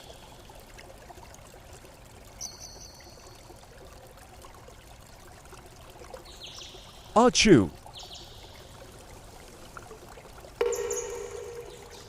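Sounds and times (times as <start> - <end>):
high whistling tone: 10.6 - 12.0.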